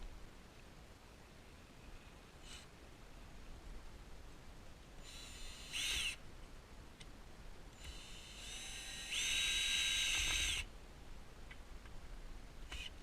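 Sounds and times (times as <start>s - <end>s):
cordless drill motor whine: 5.0s - 6.2s, 7.8s - 10.7s.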